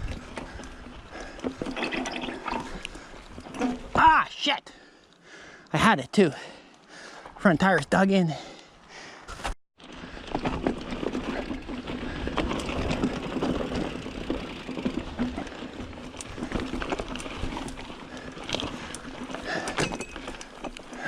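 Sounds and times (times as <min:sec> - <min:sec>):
bike clicks and rattles: 0:00.0 - 0:04.0, 0:09.8 - 0:21.0
mountain bike tyre noise: 0:00.0 - 0:07.4, 0:08.3 - 0:21.0.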